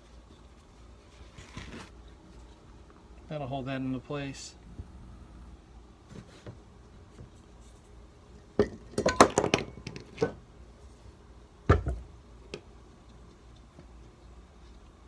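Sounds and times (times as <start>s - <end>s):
hard objects knocking and clinking: 8.6s - 10.4s.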